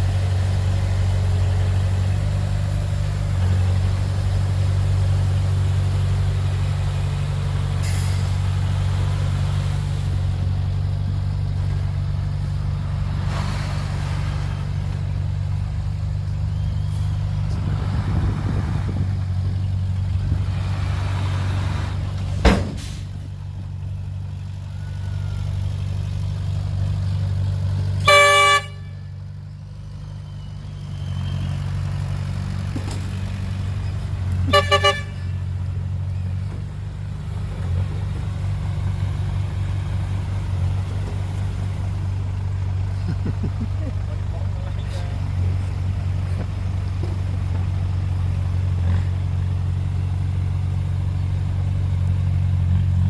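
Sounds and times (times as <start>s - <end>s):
heavy machinery engine running: 0.0s - 53.0s
vehicle horn: 28.0s - 29.2s, 34.4s - 35.5s.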